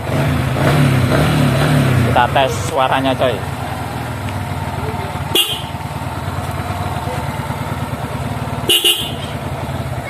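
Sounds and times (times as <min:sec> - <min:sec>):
motorcycle engine idling: 0:00.0 - 0:10.0
motorcycle horn blasts: 0:05.2 - 0:05.9, 0:08.6 - 0:09.5.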